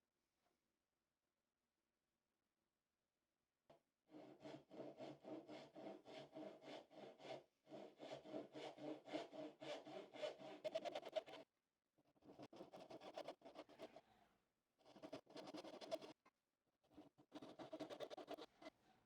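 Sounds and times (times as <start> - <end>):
hand saw cutting wood: 4.1 - 11.4, 17.1 - 18.7.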